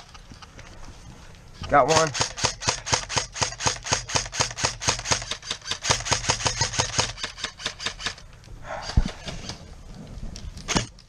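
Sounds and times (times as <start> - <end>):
airsoft rifle rapid firing: 1.9 - 8.2.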